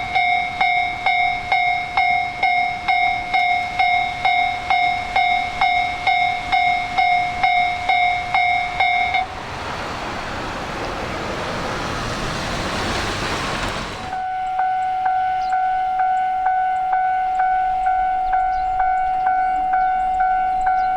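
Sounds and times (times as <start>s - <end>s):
level-crossing alarm bell ringing: 0.0s - 9.4s, 14.0s - 20.9s
diesel train passing: 0.0s - 20.9s.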